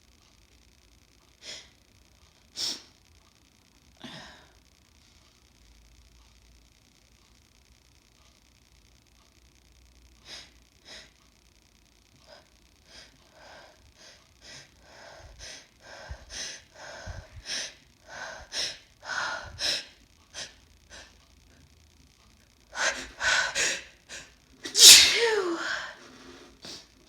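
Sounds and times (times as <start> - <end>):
woman sniffing and gasping: 22.8 - 26.8.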